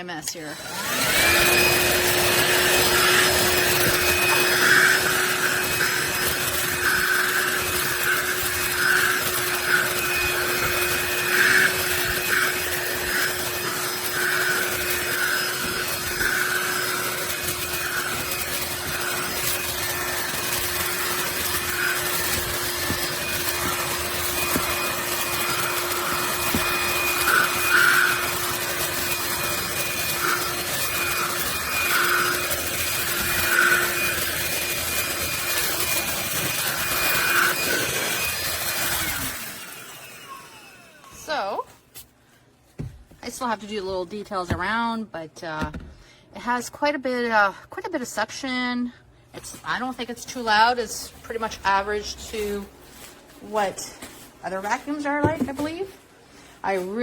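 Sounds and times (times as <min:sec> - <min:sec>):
handheld vacuum motor whine: 0:00.2 - 0:41.8, 0:49.4 - 0:53.9, 0:54.5 - 0:57.0
brush scratching over carpet: 0:01.2 - 0:38.7, 0:49.4 - 0:57.0.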